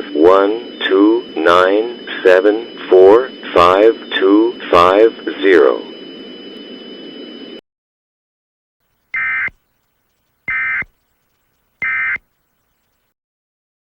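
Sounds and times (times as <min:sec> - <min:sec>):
warbling digital data tones: 0:00.0 - 0:07.6.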